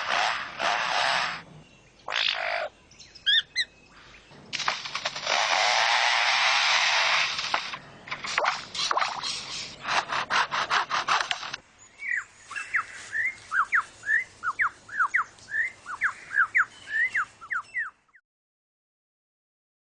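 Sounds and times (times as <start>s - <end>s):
bird mimicking a chainsaw: 0.0s - 1.5s, 2.1s - 2.7s, 4.6s - 11.6s.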